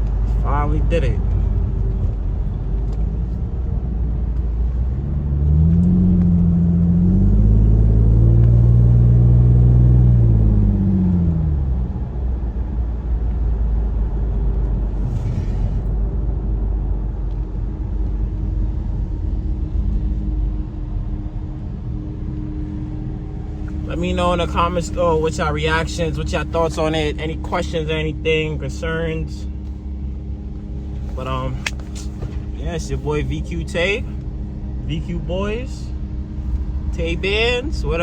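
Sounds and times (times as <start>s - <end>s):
car exhaust drone: 0.0s - 38.0s.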